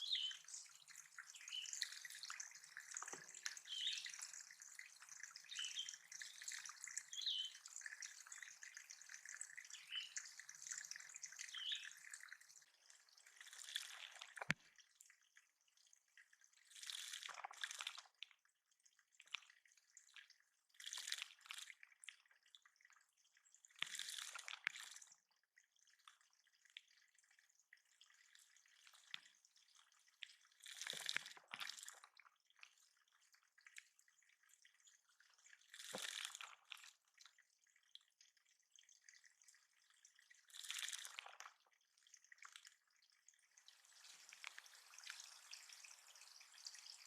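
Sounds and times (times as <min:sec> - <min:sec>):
water splashing in pond: 0:00.0 - 0:14.9, 0:16.6 - 0:18.2, 0:20.7 - 0:21.8, 0:23.7 - 0:25.1, 0:30.3 - 0:33.2, 0:35.2 - 0:37.2, 0:39.2 - 0:42.9, 0:43.5 - 0:47.0.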